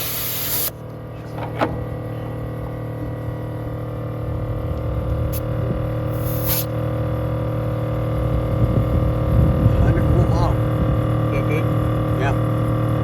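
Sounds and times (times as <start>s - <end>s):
air hissing: 0.0s - 0.7s, 6.1s - 6.7s
air compressor humming: 0.0s - 13.0s.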